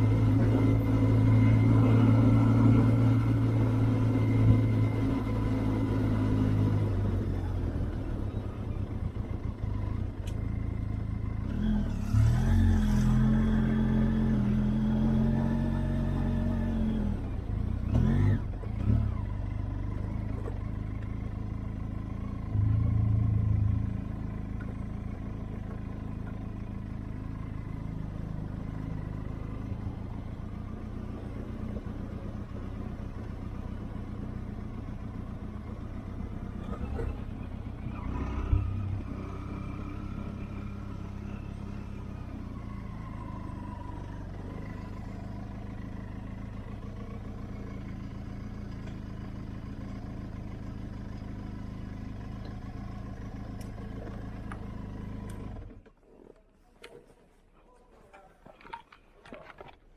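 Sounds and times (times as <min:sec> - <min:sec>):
motorcycle engine idling: 0:02.8 - 0:11.5, 0:17.3 - 0:37.8, 0:40.4 - 0:55.9.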